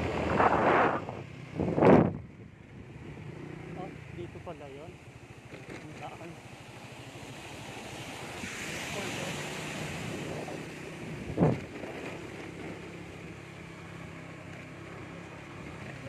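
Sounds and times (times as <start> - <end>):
wind rushing over microphone: 0.0 - 3.4, 8.2 - 12.8.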